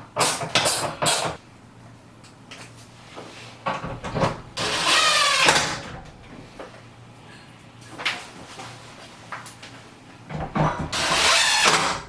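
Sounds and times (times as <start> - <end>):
grating squeal: 4.6 - 5.9, 10.8 - 12.0
tools and metal parts clattering: 10.3 - 12.0.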